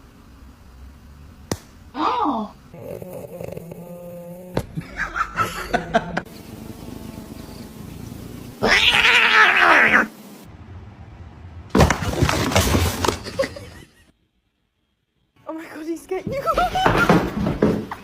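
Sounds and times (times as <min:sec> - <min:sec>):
cat yowling: 0:08.6 - 0:10.1.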